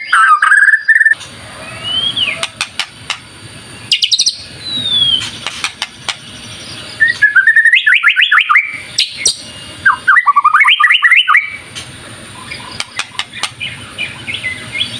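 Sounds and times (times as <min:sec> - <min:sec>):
songbird singing rapid notes: 0:03.8 - 0:14.9
short sharp bird clicking calls: 0:05.2 - 0:06.3.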